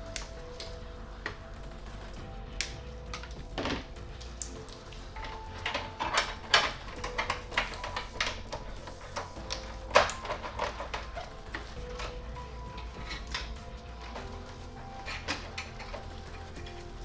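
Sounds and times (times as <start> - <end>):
computer hardware clicks and knocks: 0.0 - 17.0
quiet background music: 0.0 - 17.0.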